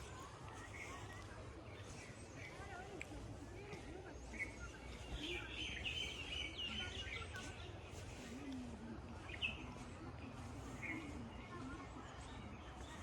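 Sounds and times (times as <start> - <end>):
low outdoor background noise: 0.0 - 13.0
small birds chirping: 0.1 - 8.4.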